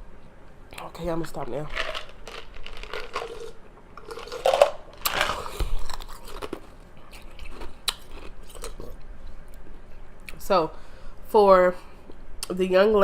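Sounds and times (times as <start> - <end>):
person chewing and biting: 1.8 - 9.0.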